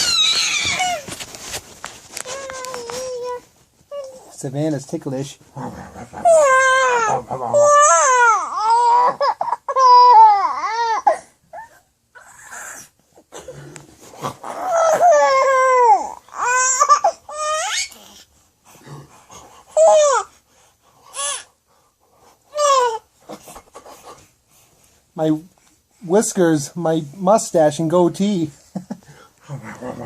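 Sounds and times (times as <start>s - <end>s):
baby squealing and laughing: 0.0s - 1.1s, 6.2s - 12.8s, 14.5s - 18.0s.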